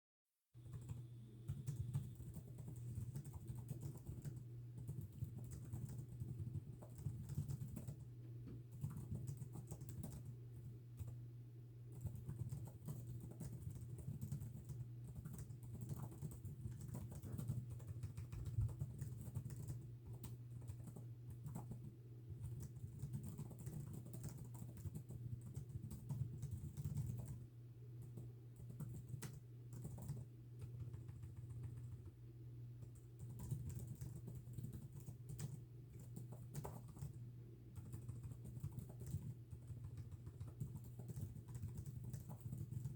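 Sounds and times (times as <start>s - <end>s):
keyboard typing clicks: 0.6s - 10.3s, 11.9s - 27.4s, 28.0s - 32.1s, 32.8s - 37.2s, 37.8s - 42.9s
steady low hum: 0.6s - 42.9s.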